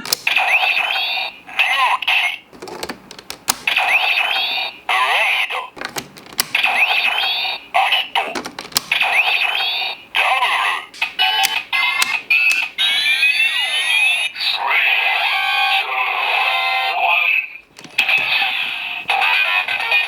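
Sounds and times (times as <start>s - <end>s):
plastic switch clicks: 0.0s - 0.4s, 2.6s - 3.8s, 5.8s - 6.7s, 8.2s - 9.2s, 10.9s - 12.8s.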